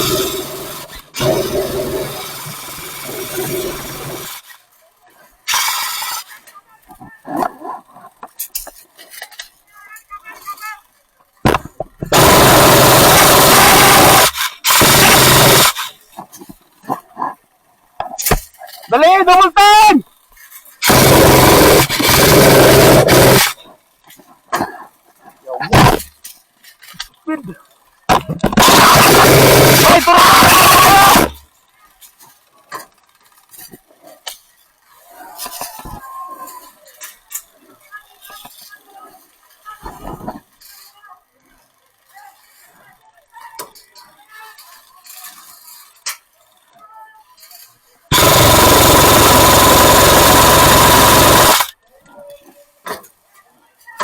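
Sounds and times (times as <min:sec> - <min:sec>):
airsoft gun firing full auto: 0:11.5 - 0:15.9, 0:20.8 - 0:23.6, 0:28.6 - 0:31.4, 0:48.1 - 0:51.7.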